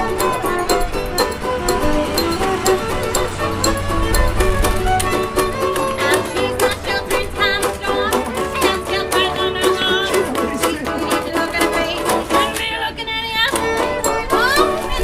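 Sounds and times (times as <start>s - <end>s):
fiddle melody: 0.0s - 15.0s
string band music: 0.0s - 15.0s.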